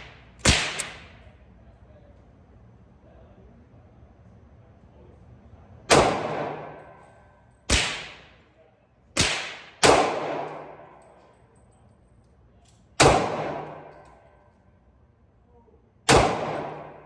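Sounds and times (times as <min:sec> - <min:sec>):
pistol shots: 0:00.0 - 0:01.2, 0:05.9 - 0:07.0, 0:07.7 - 0:08.4, 0:09.2 - 0:11.0, 0:13.0 - 0:14.2, 0:16.1 - 0:17.0.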